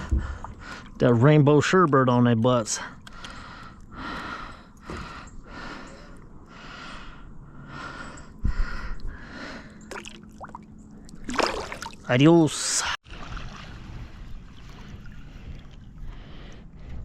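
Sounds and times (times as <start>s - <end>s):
person breathing heavily: 2.8s - 9.9s, 14.8s - 17.0s.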